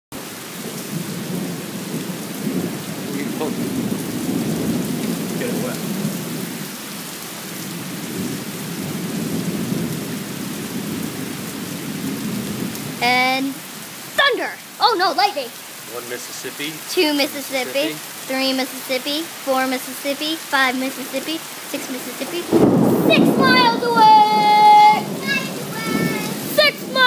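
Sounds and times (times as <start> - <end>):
heavy rain pouring: 0.1 - 27.0
rumble of thunder: 0.6 - 6.8, 7.6 - 13.0, 22.4 - 27.0
person calling out: 14.2 - 15.6, 16.8 - 27.0.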